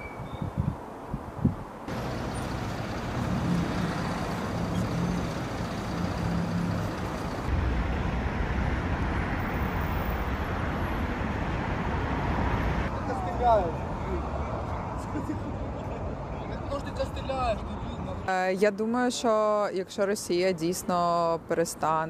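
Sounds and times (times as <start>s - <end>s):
road traffic noise: 0.0s - 22.0s
low engine hum: 1.9s - 8.4s.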